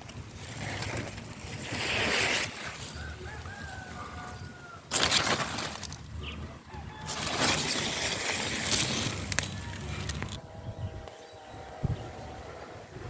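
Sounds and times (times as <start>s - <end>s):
chickens rustling through compost: 0.0s - 10.3s.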